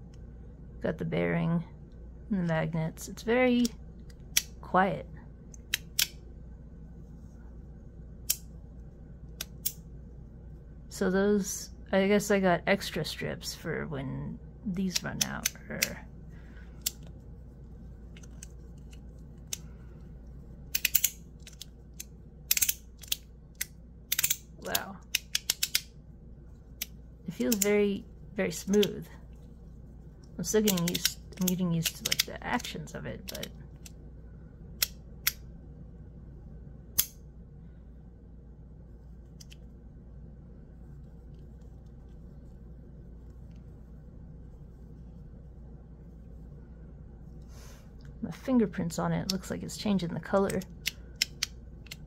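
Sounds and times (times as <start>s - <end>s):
fidget toy clicking: 20.7s - 25.9s, 30.5s - 33.9s.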